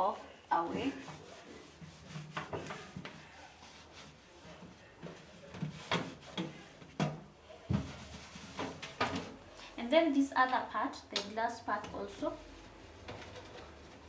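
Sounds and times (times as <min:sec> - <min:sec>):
scrubbing pad scraping oven: 0:00.0 - 0:07.0, 0:07.7 - 0:09.4.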